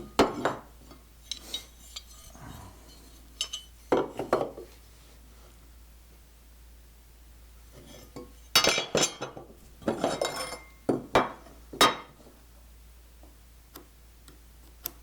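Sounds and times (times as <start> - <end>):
tools clinking and knocking on workbench: 3.4 - 4.7, 8.6 - 12.2.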